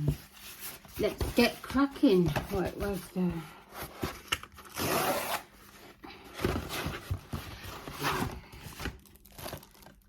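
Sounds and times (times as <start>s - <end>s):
knocks and rubbing of contents: 0.0s - 4.5s
packaging rustling: 3.8s - 10.0s.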